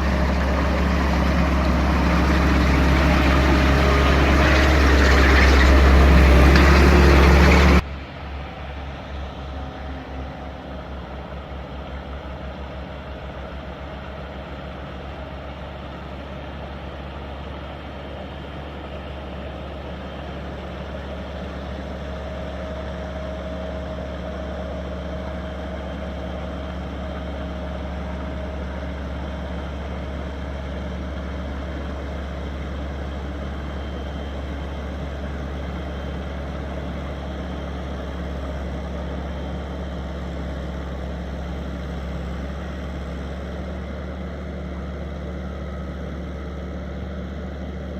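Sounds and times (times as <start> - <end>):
compact loader engine running: 0.0 - 47.9.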